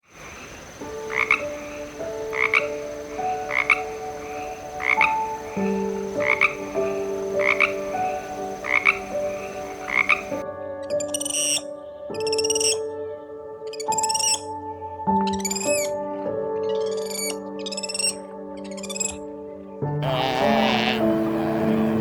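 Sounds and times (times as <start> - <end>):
frog croaking: 0.0 - 10.4, 20.0 - 22.0
sustained musical notes: 20.0 - 22.0.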